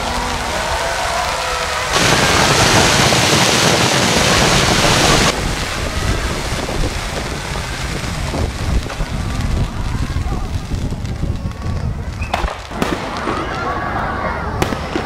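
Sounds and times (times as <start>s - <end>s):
fireworks crackling hiss: 0.0s - 15.0s.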